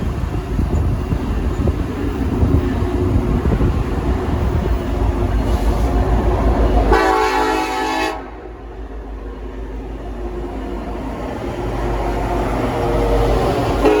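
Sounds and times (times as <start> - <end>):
wind buffeting microphone: 0.0 - 7.0
diesel train rumble: 0.0 - 14.0
locomotive air horn blast: 6.9 - 8.5, 13.8 - 14.0.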